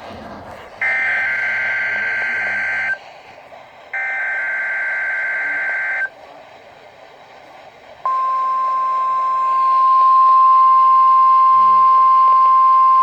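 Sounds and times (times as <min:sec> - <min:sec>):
weather radio alarm tone: 0:00.8 - 0:03.0, 0:04.0 - 0:06.1, 0:08.1 - 0:13.0.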